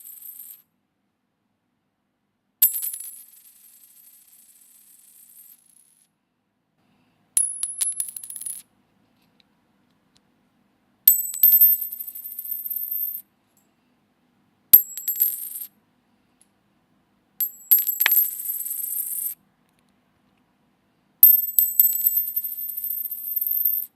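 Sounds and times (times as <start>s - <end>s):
coin dropping on hard surface: 0.0s - 0.7s, 2.6s - 6.1s, 7.4s - 8.7s, 11.1s - 13.2s, 14.8s - 15.7s, 17.4s - 19.4s, 21.2s - 23.9s.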